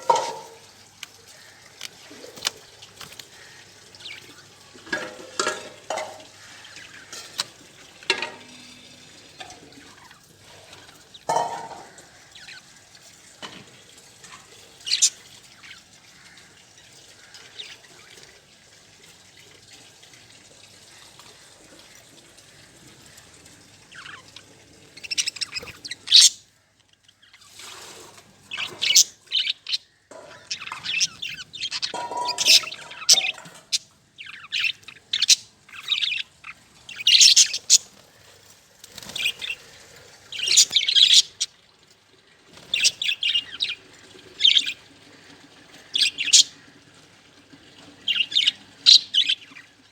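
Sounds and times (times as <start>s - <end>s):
budgerigars chirping: 14.8s - 15.2s, 25.0s - 26.4s, 28.5s - 29.8s, 30.4s - 37.8s, 39.1s - 39.6s, 40.3s - 41.5s, 48.1s - 49.7s.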